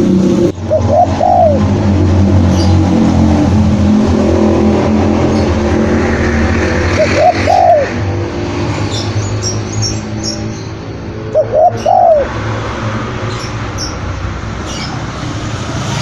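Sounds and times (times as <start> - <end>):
low engine-like hum: 0.0 - 16.0
dove cooing: 0.6 - 1.8, 6.9 - 8.0, 11.2 - 12.6.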